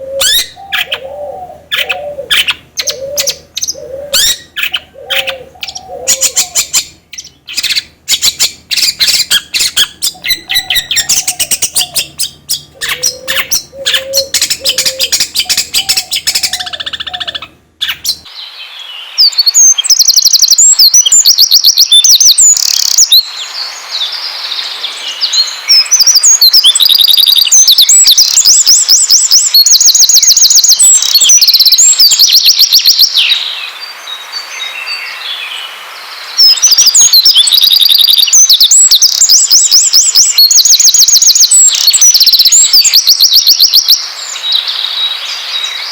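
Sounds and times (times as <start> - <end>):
fast high bird trills: 0.0 - 23.3, 25.1 - 33.6, 36.4 - 44.1
songbirds singing: 0.0 - 45.9.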